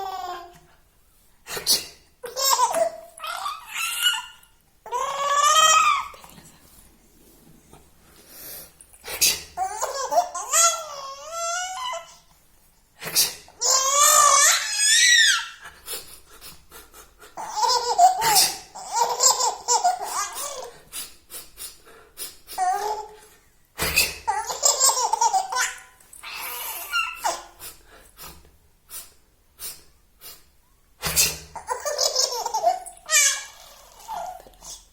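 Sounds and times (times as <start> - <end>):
small child laughing: 2.2 - 6.2, 13.6 - 20.7, 24.3 - 27.5, 31.6 - 34.6
child sneezing: 18.2 - 18.7, 23.8 - 24.3, 31.0 - 31.7.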